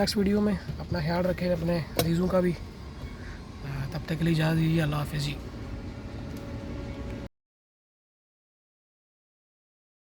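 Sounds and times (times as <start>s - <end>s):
faint steady hum: 0.0s - 7.3s.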